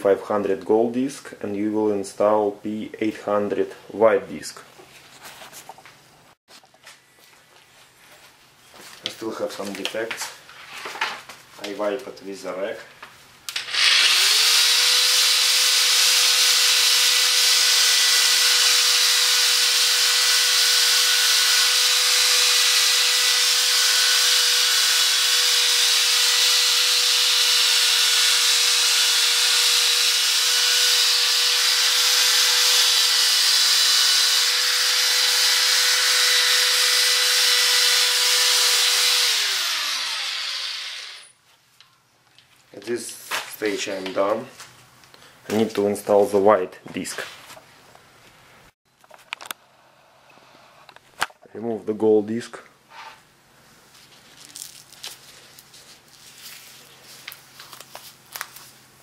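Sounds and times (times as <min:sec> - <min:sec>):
drill sanding plastic: 0:13.6 - 0:41.3.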